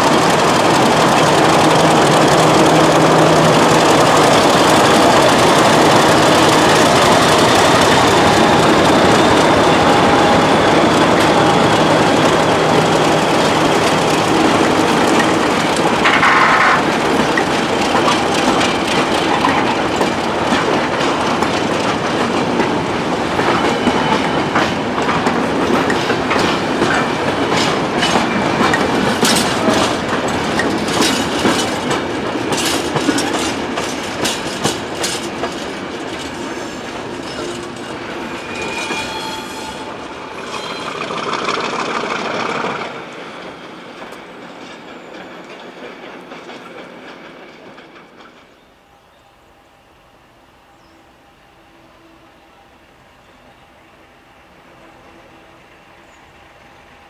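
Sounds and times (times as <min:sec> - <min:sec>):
train wheels clattering: 0:00.0 - 0:48.7
faint high wheel squeal: 0:36.6 - 0:41.5.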